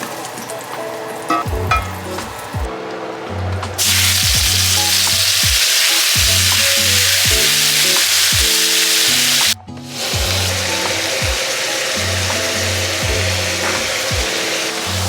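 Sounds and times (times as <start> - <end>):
background music with bass beat: 1.3 - 11.4, 12.0 - 14.4
food sizzling in frying pan: 3.8 - 15.0.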